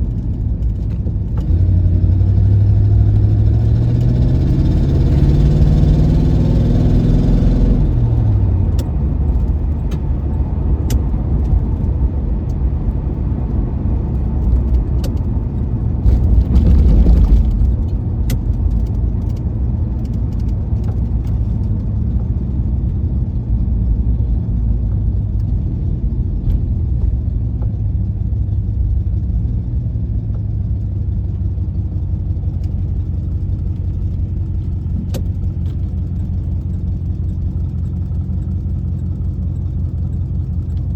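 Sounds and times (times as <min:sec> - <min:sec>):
engine rush: 0:00.0 - 0:29.6
car engine idling: 0:07.8 - 0:40.9.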